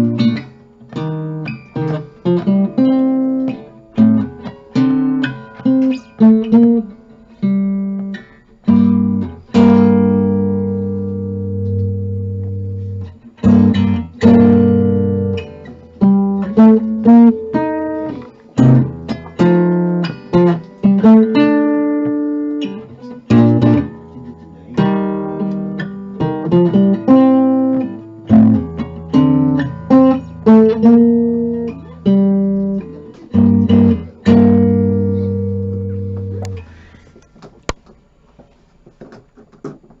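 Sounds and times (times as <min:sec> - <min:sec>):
acoustic guitar chord-melody playing: 0:00.0 - 0:37.2.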